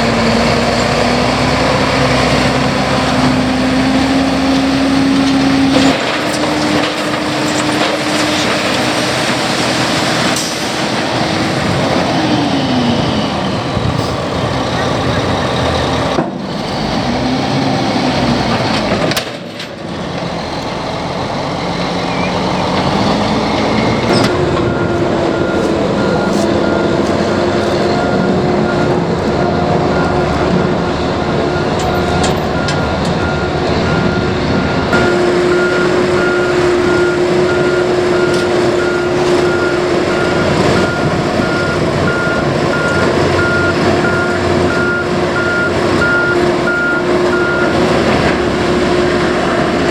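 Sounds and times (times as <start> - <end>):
diesel machinery engine drone: 0.0 - 49.9
backup alarm beeping: 24.1 - 47.8.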